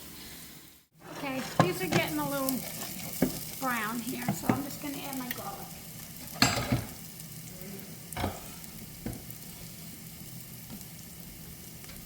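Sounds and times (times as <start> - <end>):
garlic sizzling in a pan: 0.0 - 12.0.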